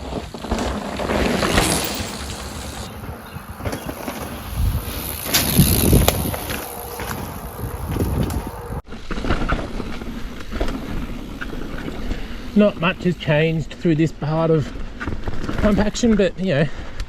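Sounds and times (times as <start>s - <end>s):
bike rattling over bumps: 0.0s - 16.2s
bike tyres crunching on dirt: 0.0s - 16.2s
wind on microphone: 1.6s - 8.8s.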